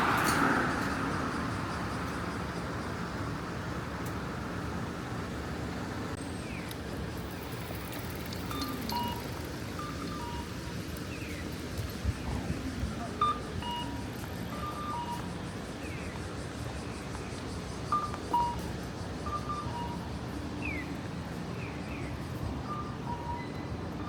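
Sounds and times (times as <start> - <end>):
falling chirps: 7.2 - 10.7
two-pitch electronic beeps: 8.3 - 10.5.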